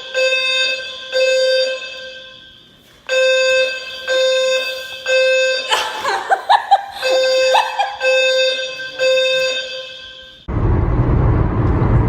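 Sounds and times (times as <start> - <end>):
fire alarm beeping: 0.0 - 10.5
people laughing: 5.6 - 8.3.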